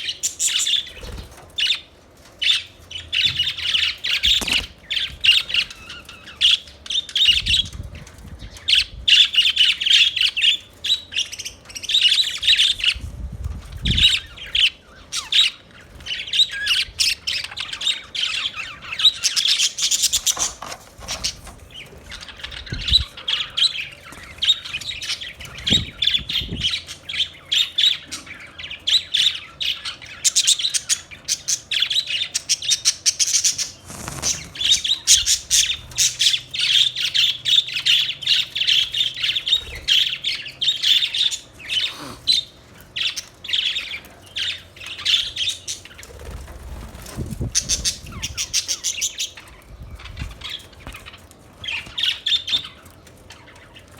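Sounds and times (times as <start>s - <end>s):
budgerigars chirping: 13.9s - 53.9s.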